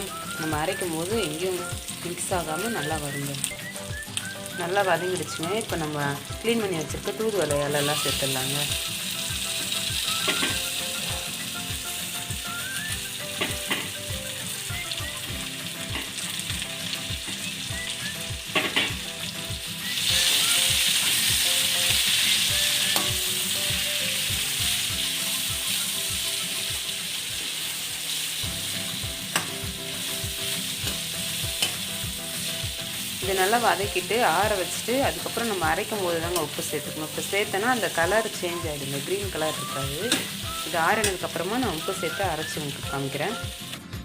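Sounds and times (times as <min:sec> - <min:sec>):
leaves sizzling in hot oil: 0:00.0 - 0:43.8.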